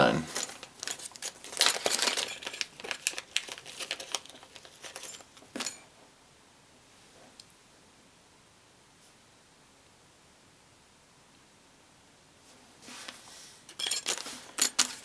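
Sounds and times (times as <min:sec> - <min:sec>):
plastic packaging crinkling: 0:00.2 - 0:05.4.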